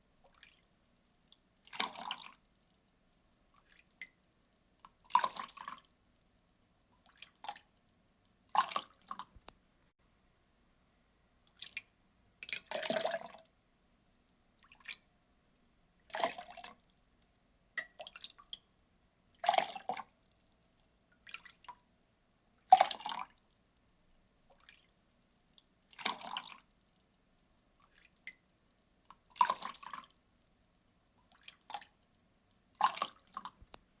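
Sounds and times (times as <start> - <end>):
water pouring in splashes: 1.6 - 2.4, 12.4 - 13.5, 16.1 - 16.7, 25.9 - 26.6, 29.3 - 30.1.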